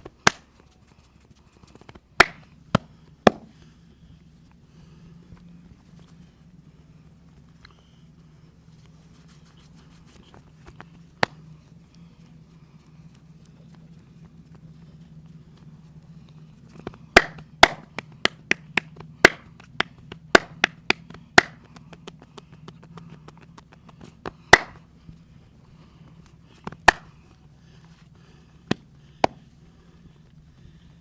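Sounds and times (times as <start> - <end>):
hand slaps on body: 0.1 - 0.6, 1.9 - 3.5, 11.2 - 11.4, 17.2 - 24.8, 26.8 - 27.1.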